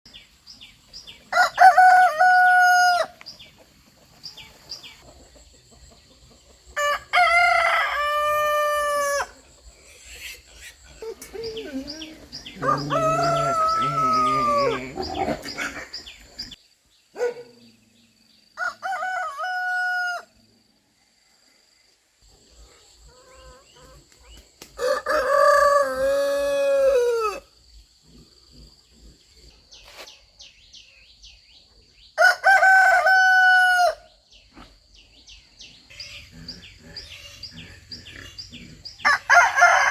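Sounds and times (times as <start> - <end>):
roosters crowing: 1.3 - 3.2, 6.8 - 9.5, 11.0 - 16.6, 18.6 - 20.4, 24.8 - 27.5, 32.2 - 34.2, 35.9 - 39.9.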